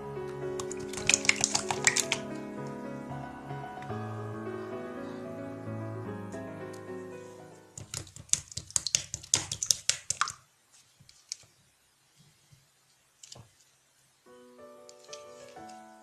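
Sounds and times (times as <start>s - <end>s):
slime crackling pops: 0.6s - 2.2s, 7.8s - 10.4s.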